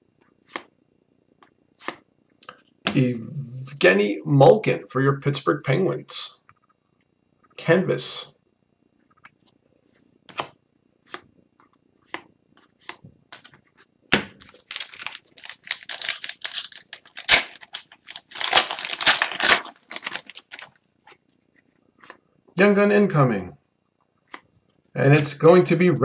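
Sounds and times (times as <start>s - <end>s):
foil wrapper tearing and crinkling: 14.4s - 20.8s.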